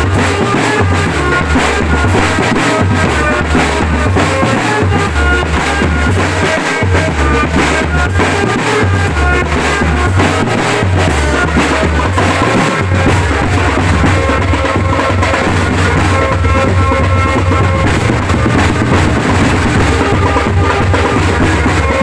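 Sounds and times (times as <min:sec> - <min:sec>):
drum band music: 0:00.0 - 0:22.0.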